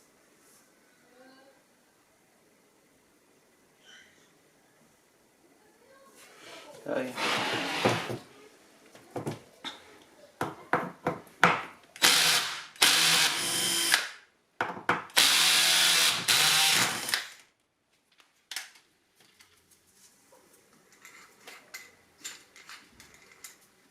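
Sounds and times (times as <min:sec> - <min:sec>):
power drill whining: 0:12.0 - 0:14.1, 0:15.2 - 0:17.4.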